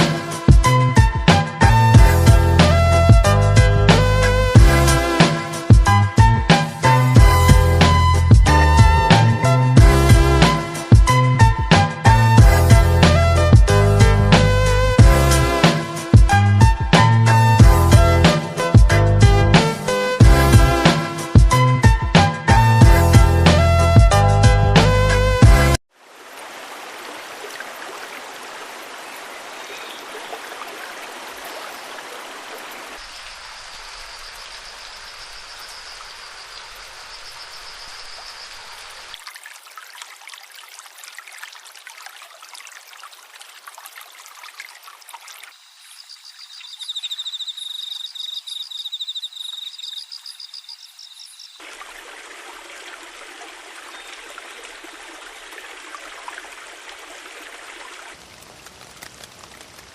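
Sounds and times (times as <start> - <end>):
waterfall and stream rushing: 0.0 - 1.8, 4.0 - 7.2, 7.8 - 12.2, 25.9 - 59.9.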